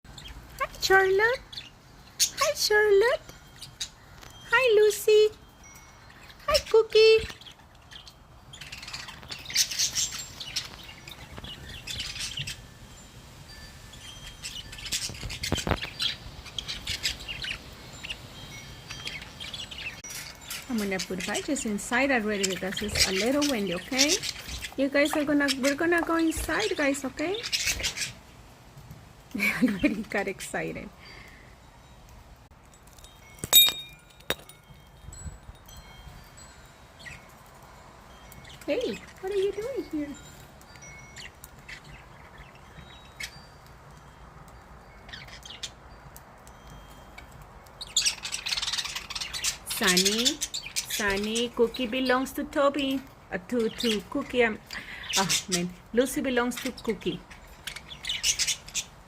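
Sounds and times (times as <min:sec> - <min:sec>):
faint high tinkling: 0:00.9 - 0:24.8, 0:30.7 - 0:49.5
budgerigars chirping: 0:06.1 - 0:12.6, 0:14.3 - 0:18.3, 0:18.9 - 0:28.2, 0:47.8 - 0:52.2, 0:53.6 - 0:59.0
metallic clink ringing: 0:32.7 - 0:36.1
wind rumble on microphone: 0:34.4 - 0:36.4.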